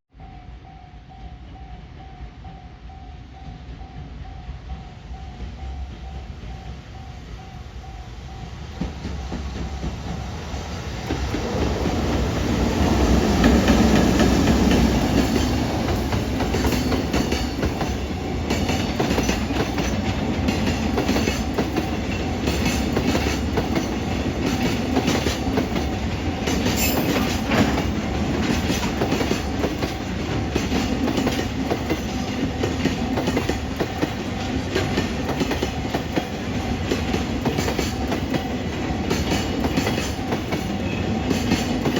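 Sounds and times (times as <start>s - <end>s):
freight train passing: 0.1s - 41.9s
wheels clacking over rail joints: 11.0s - 41.9s.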